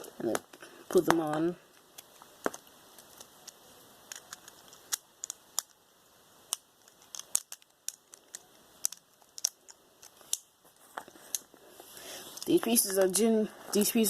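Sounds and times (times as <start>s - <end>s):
plastic bricks clicking: 0.3s - 5.8s, 6.4s - 10.5s.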